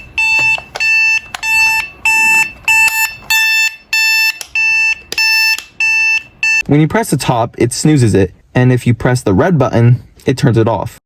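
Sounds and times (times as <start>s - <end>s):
alarm clock beeping: 0.0s - 6.6s.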